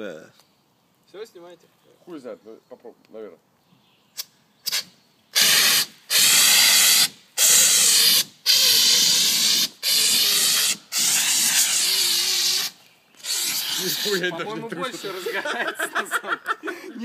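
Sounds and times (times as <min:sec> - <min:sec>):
fire extinguisher hissing blasts: 0:04.7 - 0:14.2.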